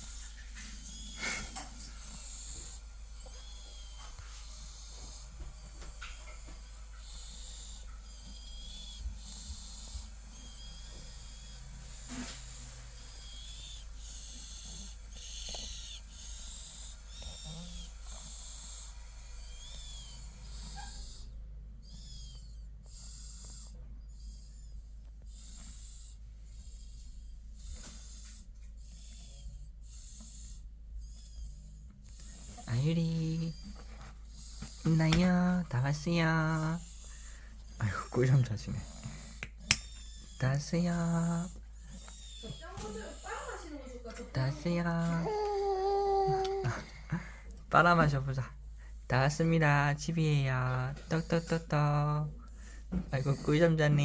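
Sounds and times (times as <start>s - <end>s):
baby snoring softly: 0.0s - 48.4s, 49.2s - 54.0s.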